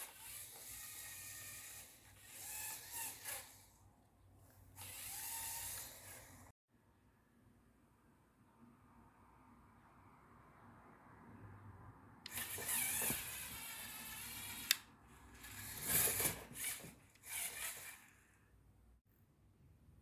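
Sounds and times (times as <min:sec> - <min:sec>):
toy motors and gears whirring: 0:00.0 - 0:03.9, 0:04.7 - 0:06.5, 0:12.3 - 0:18.4.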